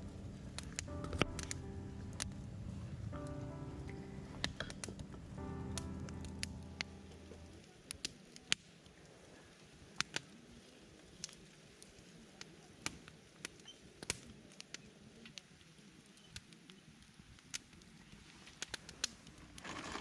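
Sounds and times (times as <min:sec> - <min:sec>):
background music: 0:00.0 - 0:07.8.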